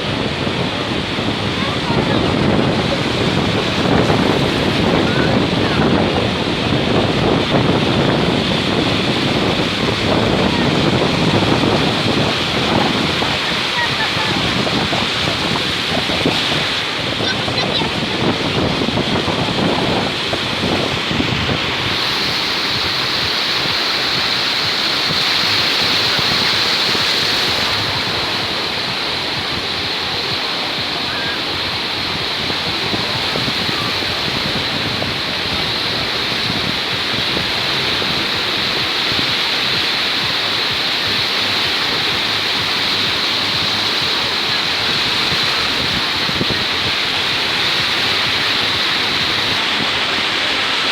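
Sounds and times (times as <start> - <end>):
surf washing on a beach: 0.0 - 50.9
wind on microphone: 0.0 - 50.9
steady high hiss: 22.0 - 34.2.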